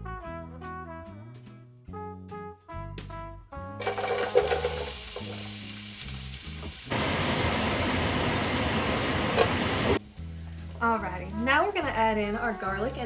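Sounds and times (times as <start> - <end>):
onion sizzling in hot oil: 3.8 - 13.0.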